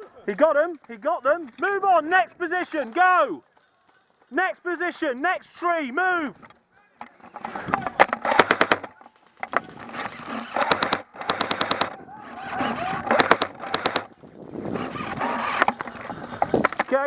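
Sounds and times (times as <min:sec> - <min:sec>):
rustling movement: 0:06.4 - 0:17.0
airsoft guns firing bursts: 0:07.4 - 0:14.1.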